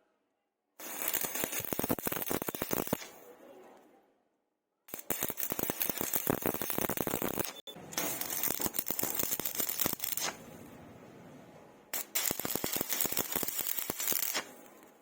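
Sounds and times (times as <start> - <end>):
welding arc crackling and popping: 0.8 - 3.2, 4.9 - 10.5, 11.9 - 15.0.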